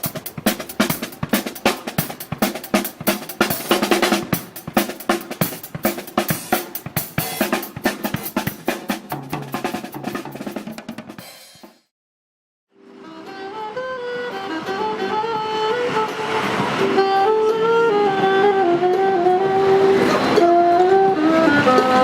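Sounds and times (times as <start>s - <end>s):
drum kit played fast: 0.0s - 11.9s.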